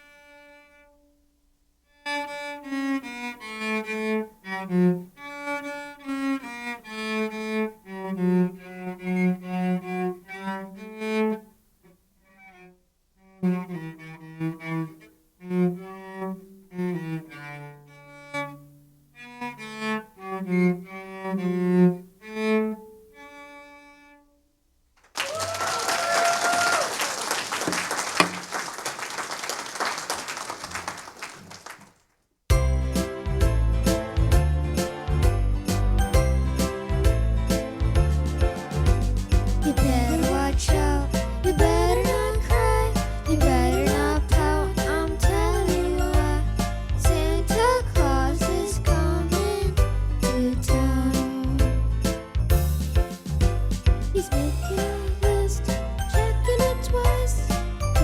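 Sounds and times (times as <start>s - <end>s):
bowed cello-range melody: 2.0s - 11.6s, 12.2s - 24.2s, 36.5s - 51.4s.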